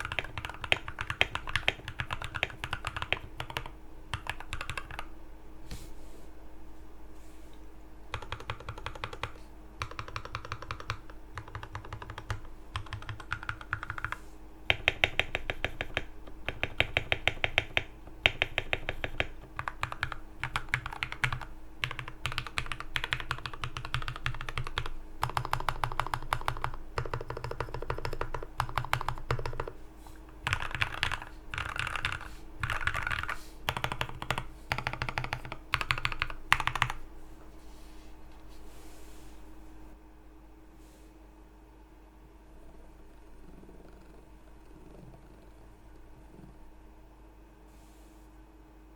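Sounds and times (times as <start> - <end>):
mechanical keyboard typing: 0.0 - 5.1, 8.1 - 29.8, 30.4 - 37.0.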